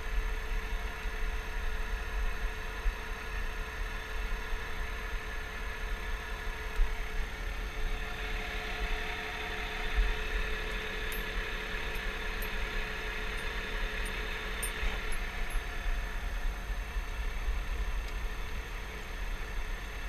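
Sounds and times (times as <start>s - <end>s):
steady whine: 4.2s - 20.0s
tractor diesel engine running: 4.2s - 20.0s.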